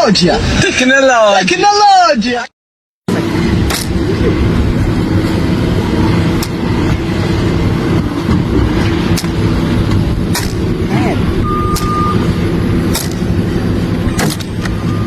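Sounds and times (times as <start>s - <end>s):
heavy engine running: 3.1s - 15.0s
short beep: 11.4s - 12.3s.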